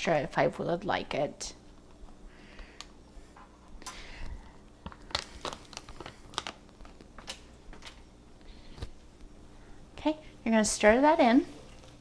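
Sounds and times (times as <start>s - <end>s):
crinkling rustles: 3.8s - 9.4s.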